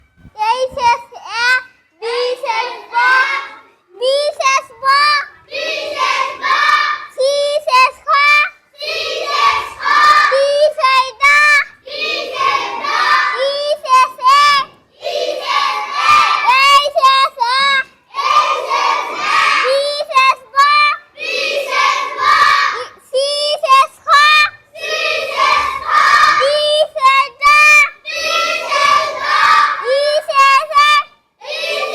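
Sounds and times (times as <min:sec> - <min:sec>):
children chanting together: 0:02.0 - 0:31.9.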